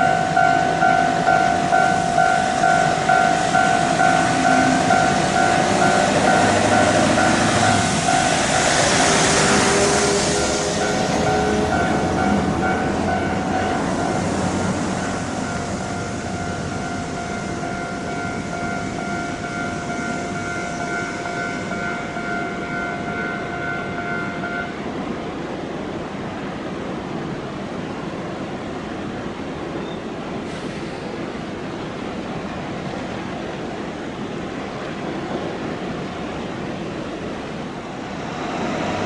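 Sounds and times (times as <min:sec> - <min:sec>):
level crossing ringing tones: 0:00.0 - 0:14.2.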